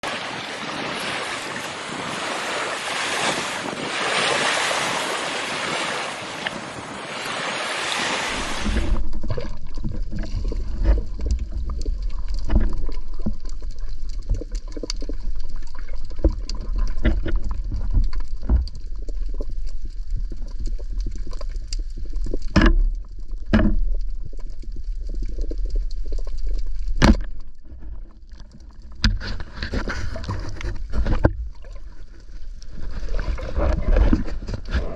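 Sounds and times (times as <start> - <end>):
sea wash: 0.0 - 34.9
muffled underwater rumble: 8.4 - 34.9
underwater clicks and knocks: 8.6 - 34.9.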